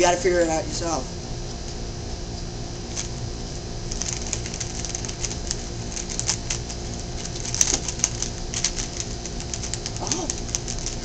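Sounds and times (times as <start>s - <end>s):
puzzle cube clicking: 3.9s - 11.0s.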